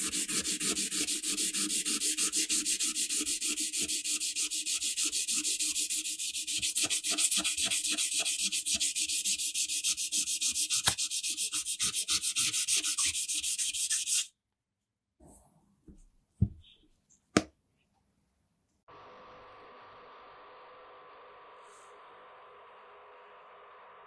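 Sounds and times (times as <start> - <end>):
sandpaper sanding metal: 0.0 - 14.3.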